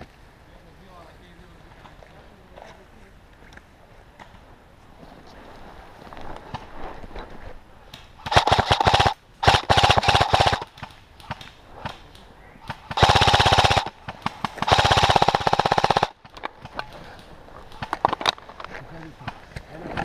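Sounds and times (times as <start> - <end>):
airsoft rifle firing bursts: 8.2 - 11.5, 12.7 - 16.8.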